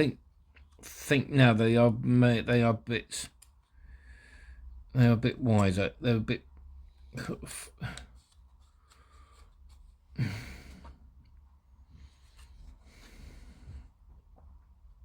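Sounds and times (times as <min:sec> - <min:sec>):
soft breathing: 0:03.6 - 0:04.9, 0:07.8 - 0:14.4
man sighing: 0:10.2 - 0:11.0.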